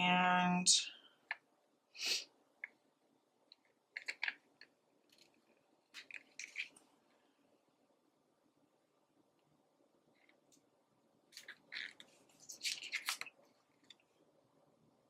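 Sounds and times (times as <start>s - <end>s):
paper sticker sheets rustling: 11.4s - 14.0s.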